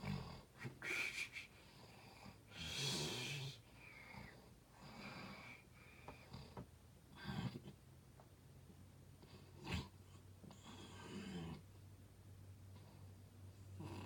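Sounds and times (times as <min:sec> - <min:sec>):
man snoring: 0:02.5 - 0:03.6.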